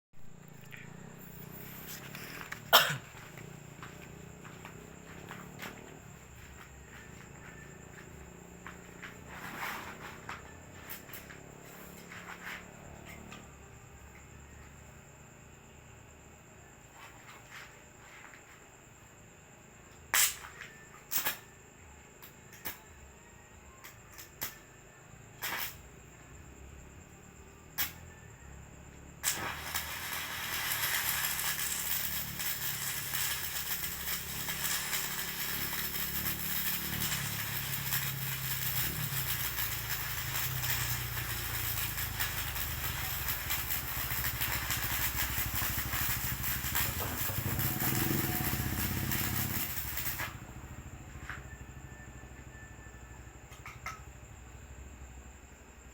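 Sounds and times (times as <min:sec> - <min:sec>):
welding arc crackling and sizzling: 0:00.4 - 0:13.4, 0:25.4 - 0:25.8, 0:29.2 - 0:51.4.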